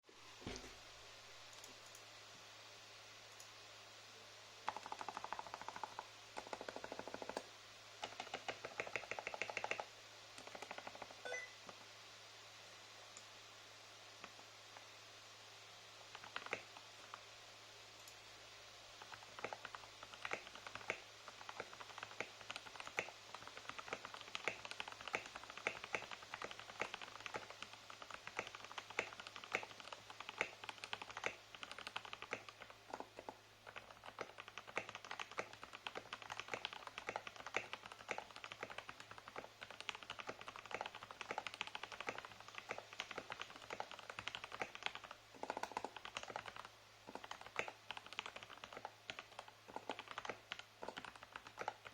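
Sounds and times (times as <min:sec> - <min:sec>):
mechanical keyboard typing: 0:04.6 - 0:11.5, 0:16.0 - 0:17.2, 0:19.0 - 0:51.9.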